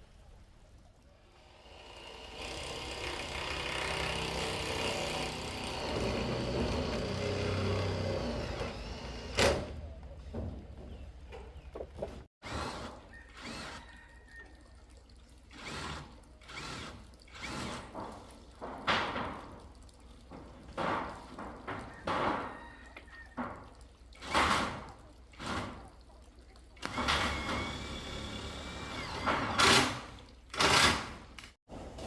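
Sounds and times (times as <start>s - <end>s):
construction knocks and thuds: 4.8s - 12.3s, 17.5s - 22.6s.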